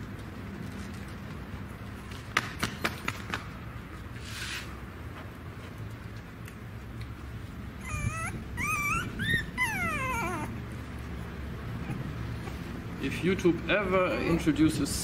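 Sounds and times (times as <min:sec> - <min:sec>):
puppy whining: 0:07.7 - 0:11.1.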